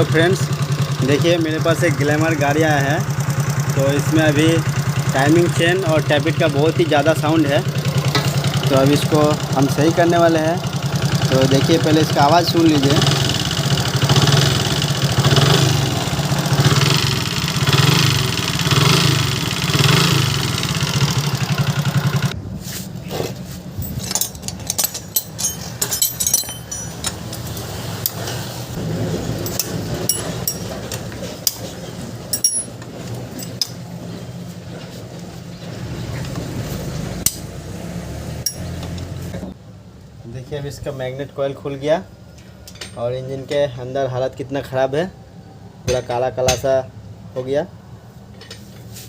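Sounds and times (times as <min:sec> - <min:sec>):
motorcycle engine running: 0:00.0 - 0:22.4, 0:24.0 - 0:39.5
timing chain and tappet rattle: 0:23.8 - 0:28.2, 0:29.3 - 0:33.8.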